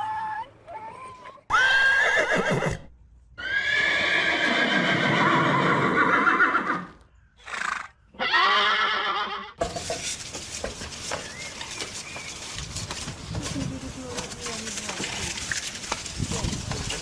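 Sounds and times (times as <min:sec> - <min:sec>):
horse whinnying: 0:01.5 - 0:09.6.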